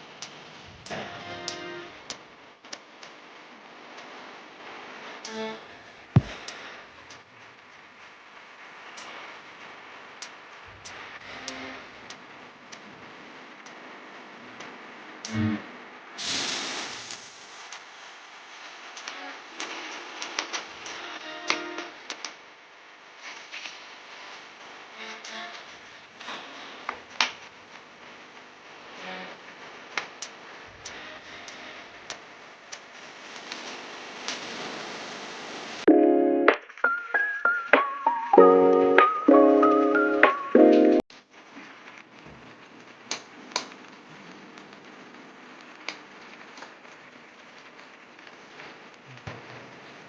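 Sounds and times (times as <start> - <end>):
pot simmering hiss: 16.1 - 19.1, 32.7 - 35.9.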